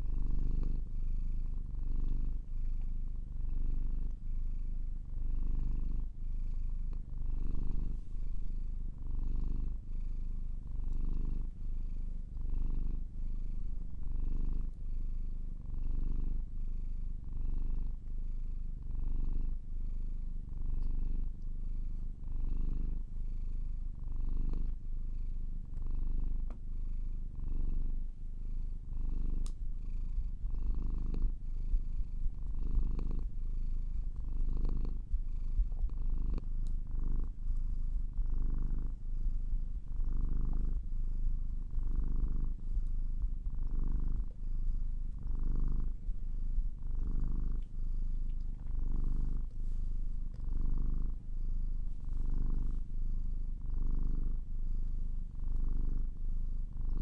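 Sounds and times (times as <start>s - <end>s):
cat purring: 0.0s - 57.0s
faint click: 29.4s - 29.7s, 36.6s - 36.8s, 47.6s - 48.8s.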